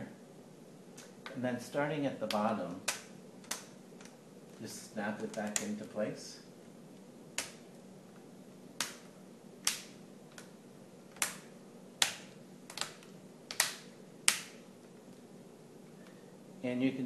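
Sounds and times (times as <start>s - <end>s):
plastic clips snapping: 2.2s - 4.2s, 7.3s - 7.8s, 8.8s - 10.5s, 11.1s - 14.6s
sharp clicks: 2.3s - 4.2s, 5.2s - 5.8s, 11.1s - 14.6s.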